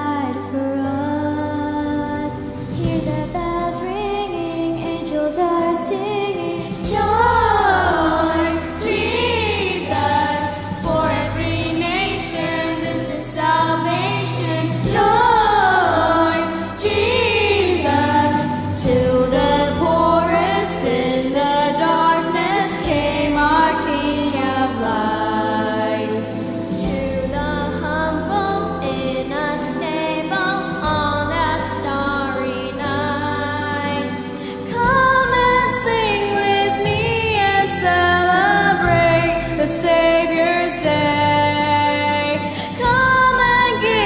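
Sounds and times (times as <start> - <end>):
low sustained bass notes: 0.0 - 33.8
choir singing a hymn: 5.5 - 44.0.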